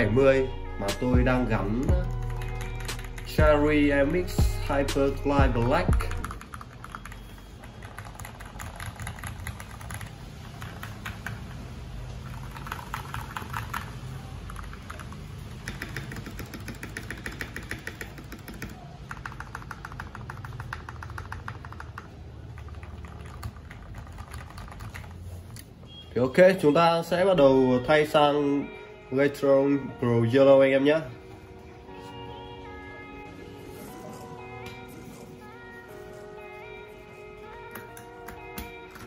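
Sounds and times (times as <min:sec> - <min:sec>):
mechanical keyboard typing: 0:05.9 - 0:25.6.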